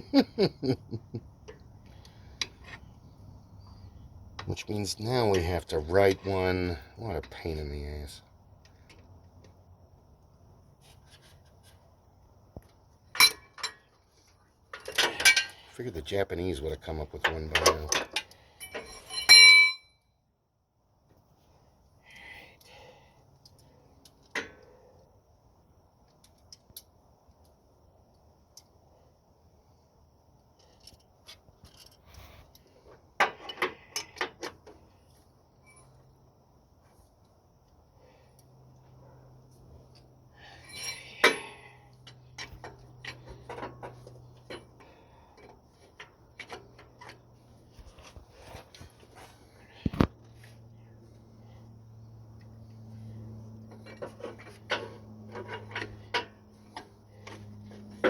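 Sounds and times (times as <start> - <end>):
steady low hum: 0.0 - 58.0
tools and metal parts clinking: 13.0 - 20.0, 30.6 - 34.9, 39.6 - 50.5, 52.4 - 58.0
metal hand tools clinking: 17.2 - 19.9, 40.4 - 41.8.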